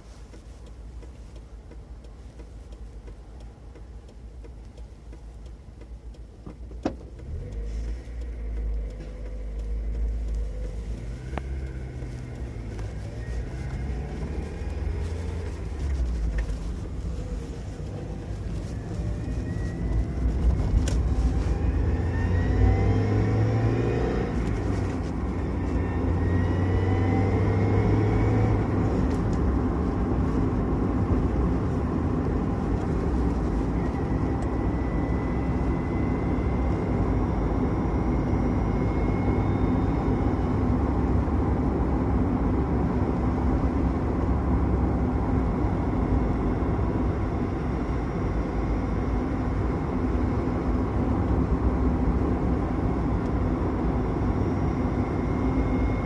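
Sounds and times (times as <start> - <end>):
car engine and road rumble: 0.0 - 56.0
thin high whine rising in pitch: 53.9 - 56.0.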